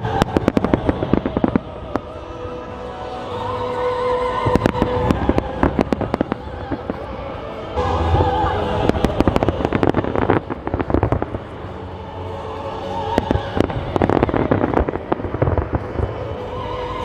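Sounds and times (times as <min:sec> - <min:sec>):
fireworks bangs and crackles: 0:00.0 - 0:02.1, 0:04.3 - 0:11.7, 0:13.1 - 0:16.8
music with held notes: 0:00.0 - 0:17.0.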